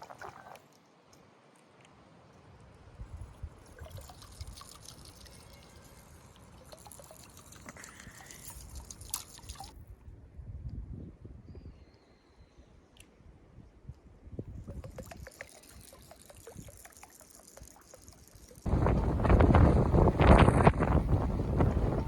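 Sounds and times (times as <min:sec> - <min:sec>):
liquid pouring and trickling: 0:00.0 - 0:00.8, 0:03.1 - 0:09.8, 0:14.5 - 0:22.0.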